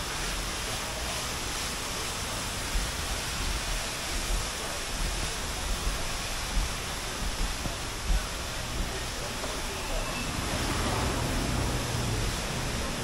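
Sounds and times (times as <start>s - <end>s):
steady rushing noise: 0.0s - 13.0s
low rumbling bumps: 5.0s - 13.0s.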